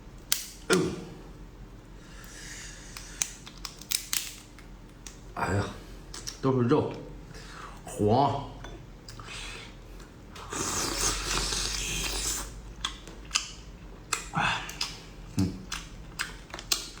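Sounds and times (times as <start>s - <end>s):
shells cracking and clicking: 0.2s - 0.7s, 2.9s - 5.3s, 15.7s - 17.0s
sucking and eating sounds: 9.0s - 17.0s.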